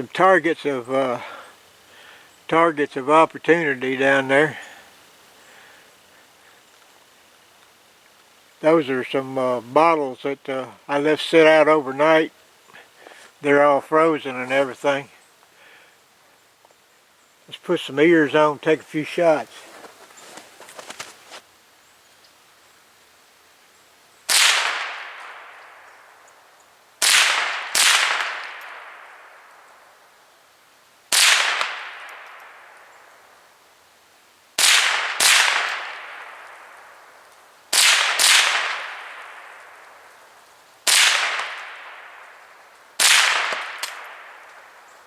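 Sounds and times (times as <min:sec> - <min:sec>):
rifle shots with echo: 0:24.3 - 0:25.9, 0:27.0 - 0:29.6, 0:31.1 - 0:32.8, 0:34.6 - 0:36.8, 0:37.7 - 0:39.7, 0:40.8 - 0:42.3, 0:43.0 - 0:44.5.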